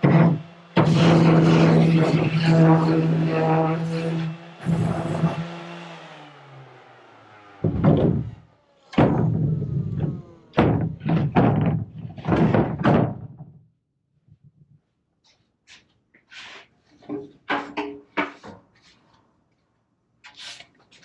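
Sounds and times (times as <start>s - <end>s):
grinder motor winding down: 0.0s - 10.6s
harsh grinding bursts: 0.0s - 11.0s.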